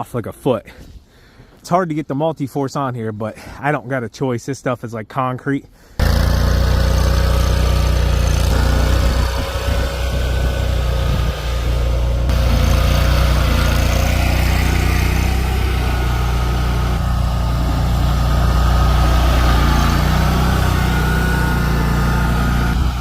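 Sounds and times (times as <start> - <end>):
snow-clearing machine engine: 6.0 - 23.0.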